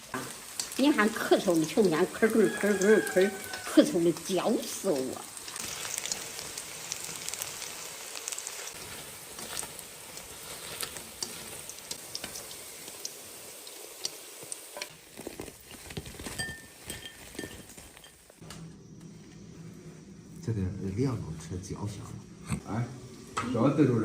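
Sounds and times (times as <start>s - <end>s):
pancakes sizzling in fat: 0.0s - 19.0s.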